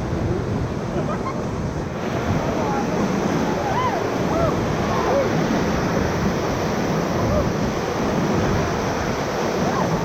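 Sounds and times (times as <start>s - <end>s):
whitewater rushing: 0.0s - 10.0s.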